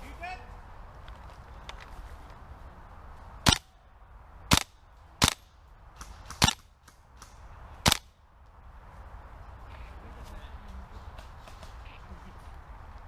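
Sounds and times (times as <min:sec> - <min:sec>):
airsoft gun shots: 0:03.4 - 0:03.7, 0:04.5 - 0:05.4, 0:06.0 - 0:08.1.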